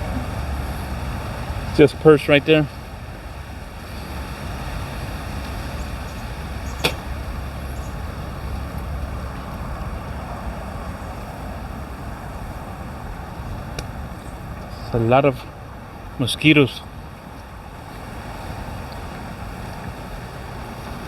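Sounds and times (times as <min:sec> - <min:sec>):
hiss: 0:03.9 - 0:07.9
sharp click: 0:06.8 - 0:07.1.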